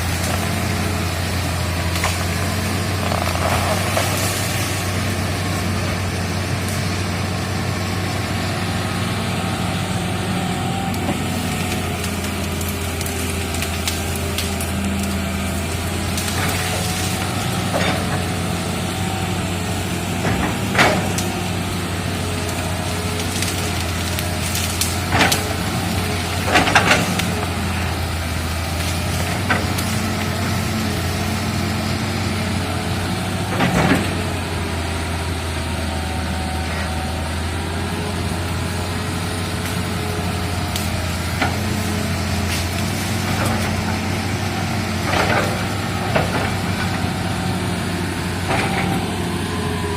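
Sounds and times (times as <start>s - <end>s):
excavator diesel engine running: 0.0s - 49.9s
sharp knocks and cracks: 20.2s - 21.3s, 23.2s - 27.4s, 45.0s - 47.0s.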